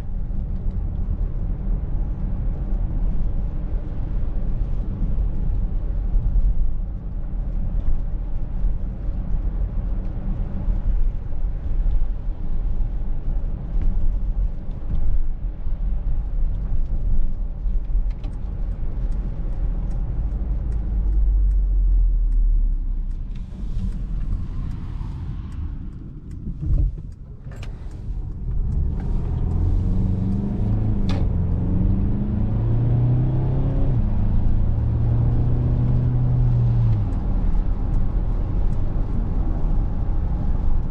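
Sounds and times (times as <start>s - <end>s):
road and tyre rumble: 0.0s - 40.9s
car engine revving: 20.6s - 37.9s.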